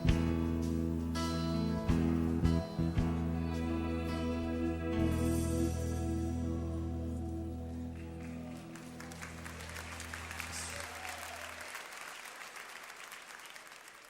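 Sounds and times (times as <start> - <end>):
band holding a low chord: 0.0 - 10.9
audience applauding: 7.9 - 14.0.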